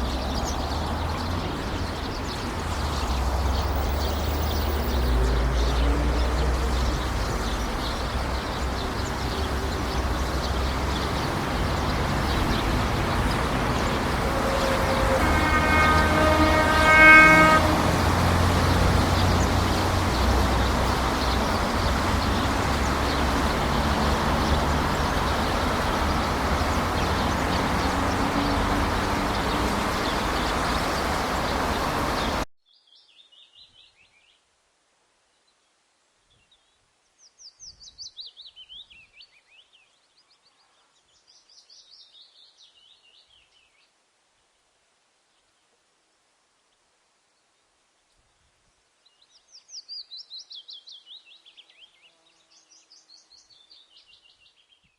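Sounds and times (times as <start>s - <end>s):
road traffic noise: 0.0s - 32.5s.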